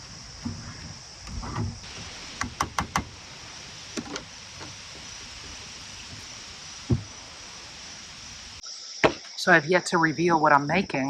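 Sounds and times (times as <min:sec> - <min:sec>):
steady faint hiss: 0:00.0 - 0:11.0
dull knock: 0:00.4 - 0:03.1, 0:06.9 - 0:07.1
sharp clicks: 0:01.2 - 0:03.2.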